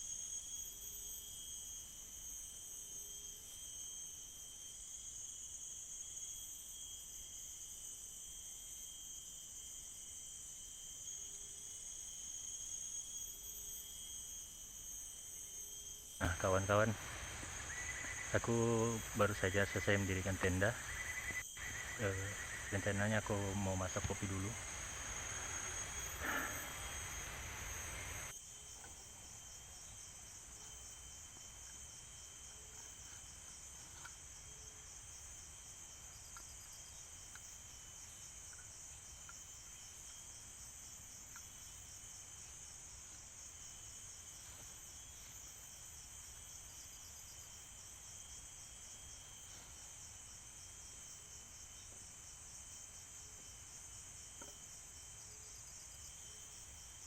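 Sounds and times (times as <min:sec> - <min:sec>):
insects droning: 0:00.0 - 0:57.0.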